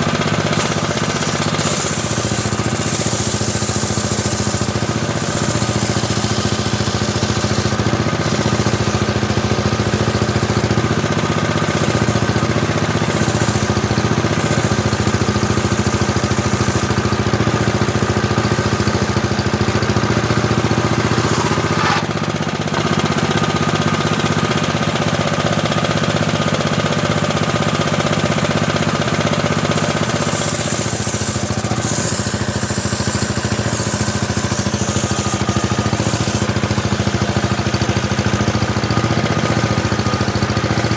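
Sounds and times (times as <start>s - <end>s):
saw blade hissing through wood: 0.0s - 40.9s
table saw running: 0.0s - 40.9s.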